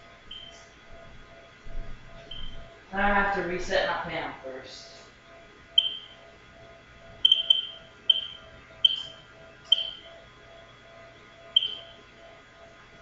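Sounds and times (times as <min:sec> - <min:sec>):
faint pulsing tone: 0:00.0 - 0:03.2, 0:05.2 - 0:13.0
short high keypad beeps: 0:05.8 - 0:06.1, 0:07.2 - 0:10.0, 0:11.6 - 0:11.9.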